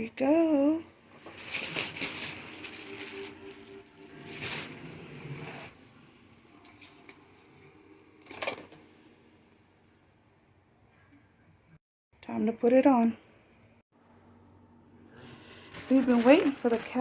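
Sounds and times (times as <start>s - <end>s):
plastic rustling and scraping: 1.1s - 8.8s, 15.7s - 17.0s.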